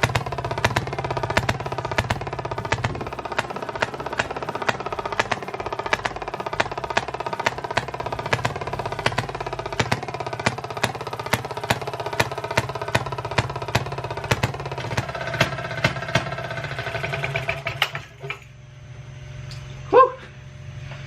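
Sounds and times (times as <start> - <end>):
fast light ticking: 0.0 - 16.4
engine firing pops: 0.0 - 18.5.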